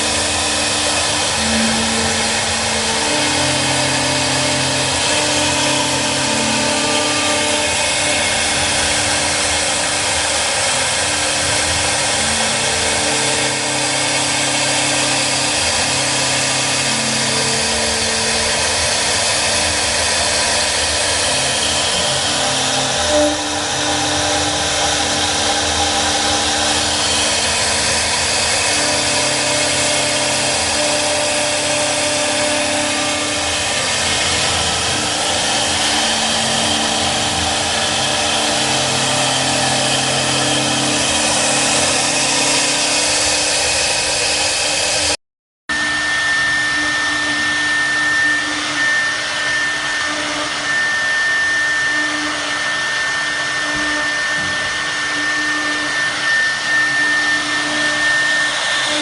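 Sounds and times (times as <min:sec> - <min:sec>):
cutting noise: 0:00.0 - 0:45.2
loud hiss: 0:00.0 - 0:45.2
router spindle whine: 0:00.0 - 0:59.0.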